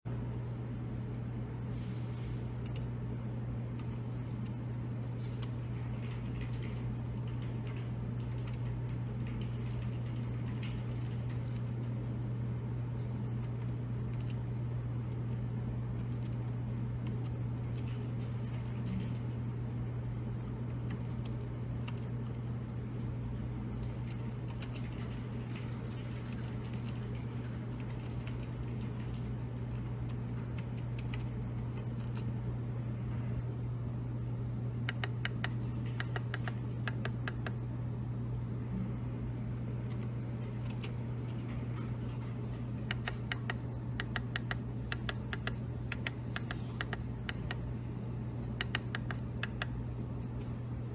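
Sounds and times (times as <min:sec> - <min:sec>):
steady low hum: 0:00.1 - 0:50.9
key-press clicks: 0:34.8 - 0:37.6, 0:42.8 - 0:47.7, 0:48.5 - 0:49.8.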